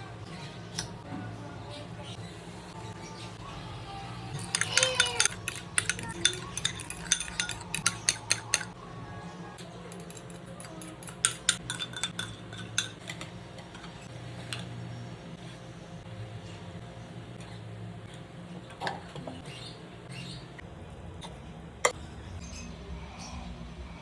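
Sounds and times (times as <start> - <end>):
metal utensil scraping a bowl: 4.3 - 8.8, 9.9 - 13.1.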